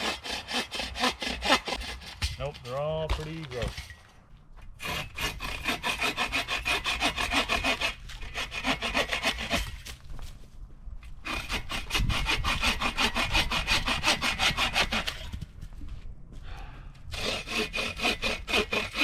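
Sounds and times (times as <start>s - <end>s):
hand saw cutting wood: 0.0s - 3.8s, 4.8s - 10.0s, 11.2s - 15.4s, 17.1s - 19.0s.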